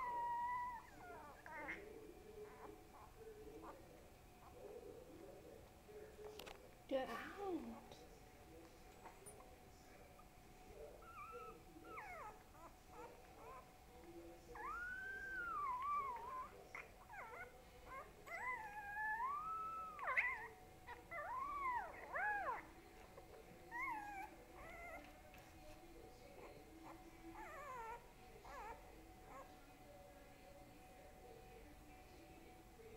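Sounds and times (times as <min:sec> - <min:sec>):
young dog howling and whining: 0:00.0 - 0:03.2, 0:11.0 - 0:13.7, 0:14.5 - 0:22.7, 0:23.7 - 0:25.2, 0:26.5 - 0:29.6.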